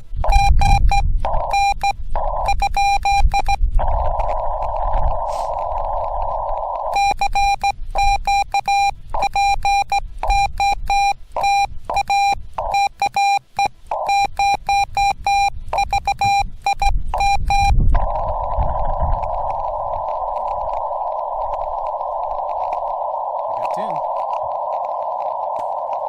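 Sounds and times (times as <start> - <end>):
morse code tone: 0.0 - 4.5, 6.9 - 21.2
radio receiver hiss: 0.0 - 26.0.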